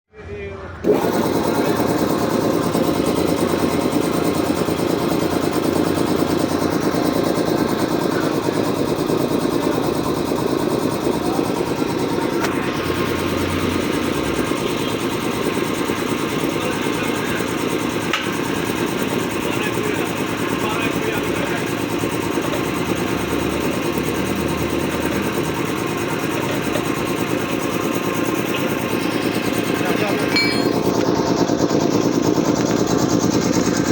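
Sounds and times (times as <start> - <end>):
air compressor running: 0.8 - 33.9.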